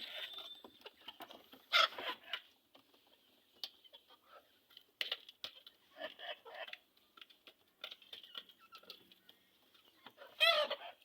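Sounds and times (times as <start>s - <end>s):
chickens tapping and scratching: 0.0s - 11.0s.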